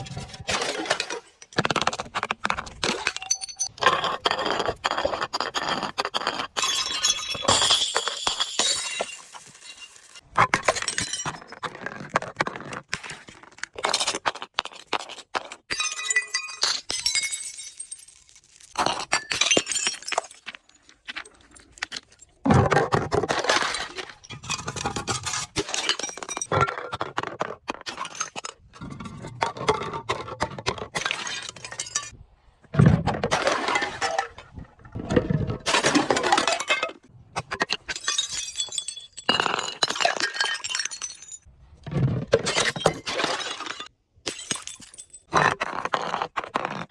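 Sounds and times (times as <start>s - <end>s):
glass bottles being smashed: 3.0s - 3.8s, 6.6s - 11.6s, 15.7s - 20.7s, 35.7s - 36.9s, 37.6s - 41.5s, 42.3s - 45.3s.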